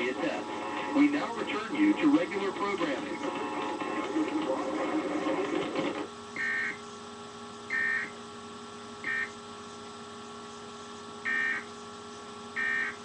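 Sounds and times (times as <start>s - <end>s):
electrical hum: 0.0s - 13.0s
shrill data bursts: 6.4s - 6.8s, 7.7s - 8.2s, 9.0s - 9.3s, 11.2s - 11.7s, 12.6s - 13.0s.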